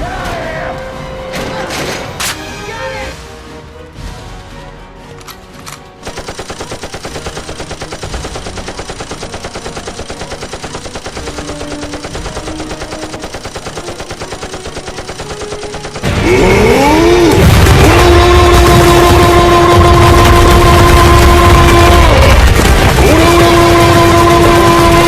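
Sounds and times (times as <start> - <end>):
rapid automatic gunfire: 6.0 - 16.8, 17.4 - 25.0.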